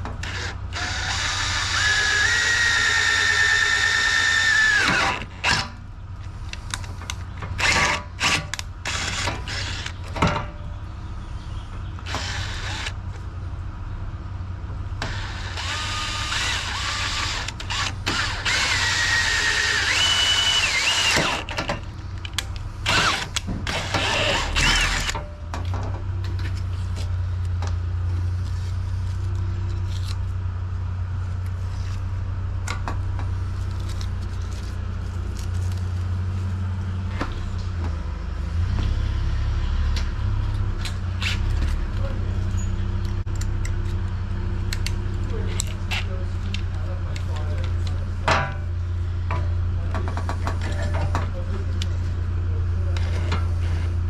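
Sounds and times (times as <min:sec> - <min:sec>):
steady low hum: 0:00.0 - 0:54.0
power tool motor whining: 0:00.1 - 0:05.8, 0:07.6 - 0:10.2, 0:12.0 - 0:13.0, 0:15.0 - 0:21.8, 0:22.8 - 0:25.3.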